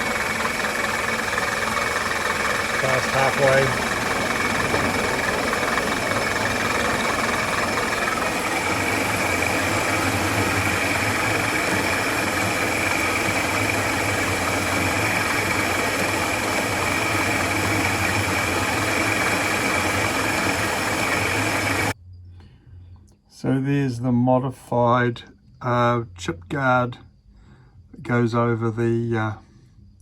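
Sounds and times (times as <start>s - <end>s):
milling machine cutting: 0.0s - 22.0s.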